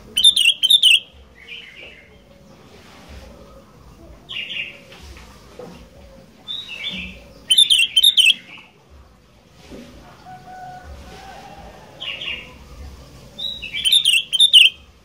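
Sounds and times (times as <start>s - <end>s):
bulbul calling: 0.0s - 2.1s, 6.0s - 8.7s, 12.0s - 15.0s.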